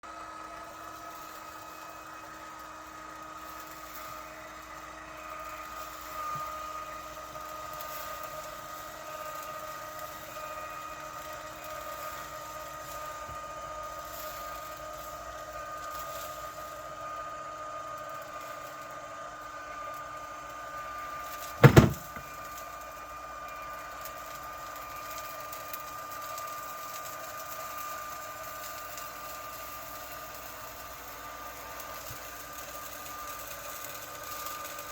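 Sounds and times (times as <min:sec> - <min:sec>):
sharp pop from litter box: 0:21.6 - 0:22.3.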